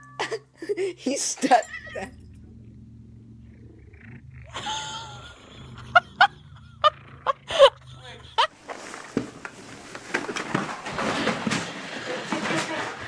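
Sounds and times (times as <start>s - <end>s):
cat yowling: 1.5s - 2.2s.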